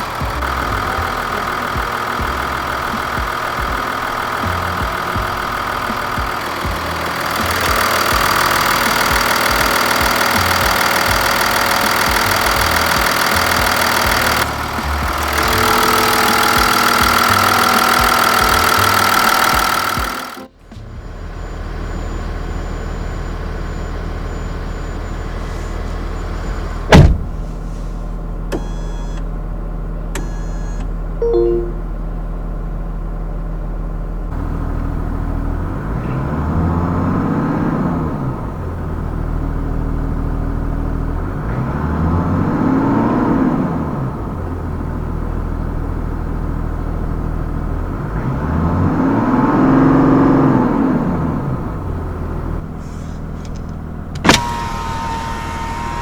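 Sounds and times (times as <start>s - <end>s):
diesel engine idling and revving: 0.0s - 56.0s
sharp slam: 26.9s - 27.5s
short beeps: 30.3s - 31.8s.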